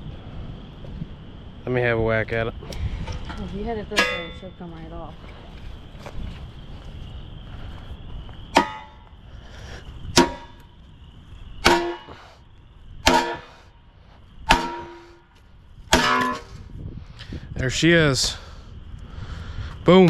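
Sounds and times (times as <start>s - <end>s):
hammer striking steel: 3.9s - 4.5s, 8.6s - 9.0s, 10.2s - 10.6s, 11.6s - 12.2s, 13.0s - 13.5s, 14.5s - 15.2s, 15.9s - 16.5s
metallic ring: 3.9s - 4.6s, 15.9s - 16.6s.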